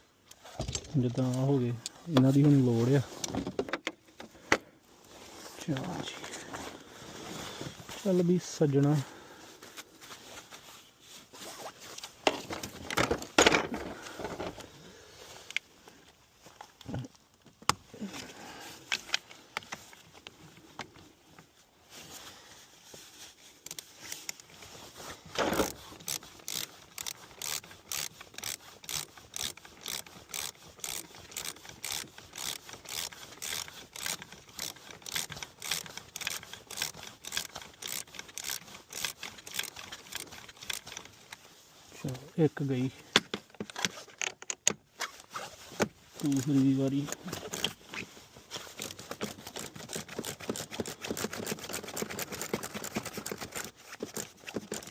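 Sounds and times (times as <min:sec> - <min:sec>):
scrapes on a nut: 0:25.4 - 0:41.2, 0:48.5 - 0:54.9
ratchet wrench clicking: 0:25.5 - 0:41.0.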